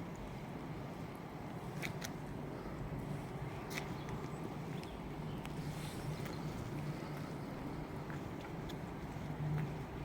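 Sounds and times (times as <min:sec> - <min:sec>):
light clicks and ticks: 0:08.0 - 0:09.0.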